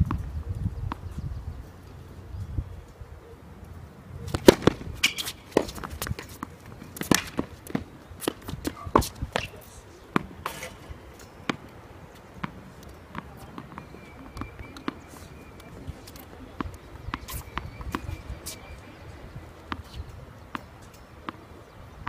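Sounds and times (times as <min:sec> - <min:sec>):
tennis balls hit with rackets: 0:04.3 - 0:18.7
tennis balls bouncing on court: 0:04.3 - 0:18.9, 0:19.5 - 0:21.5.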